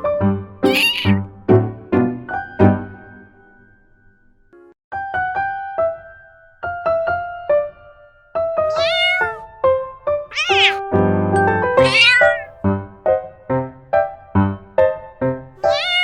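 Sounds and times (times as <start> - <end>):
cat meowing: 0.6 - 1.2, 8.7 - 9.4, 10.3 - 10.8, 11.8 - 12.5, 15.6 - 16.0.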